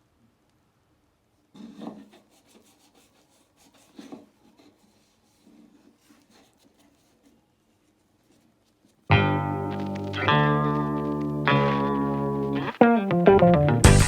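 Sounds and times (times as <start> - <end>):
hand rubbing on wood: 1.6 - 9.1.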